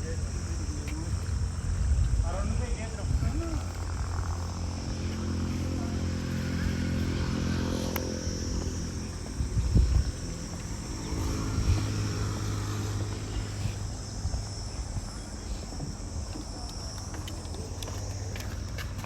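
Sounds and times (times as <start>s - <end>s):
faint voices: 0.0s - 19.0s
insects chirring: 0.0s - 19.0s
low engine hum: 0.0s - 19.0s.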